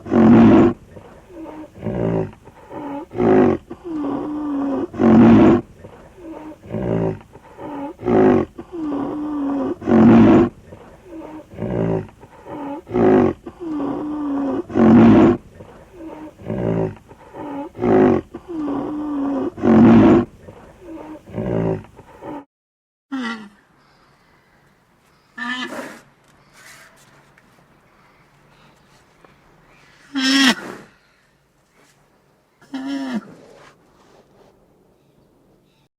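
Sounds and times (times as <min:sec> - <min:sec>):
rhinoceros bellowing: 0:00.0 - 0:22.4.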